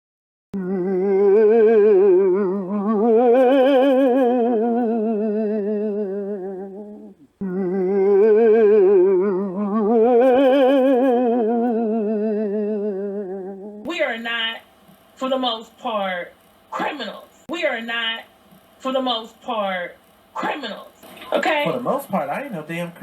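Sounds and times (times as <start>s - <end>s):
person singing with vibrato: 0.6s - 13.9s.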